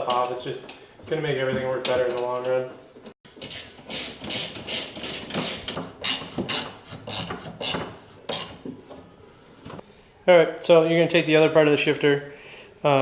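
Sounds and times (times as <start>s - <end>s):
hand tool rasping on metal: 3.4s - 8.6s.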